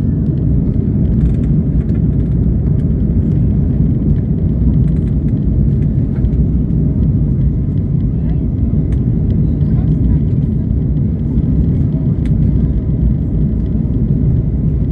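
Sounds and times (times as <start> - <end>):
airliner rumble: 0.0 - 14.9.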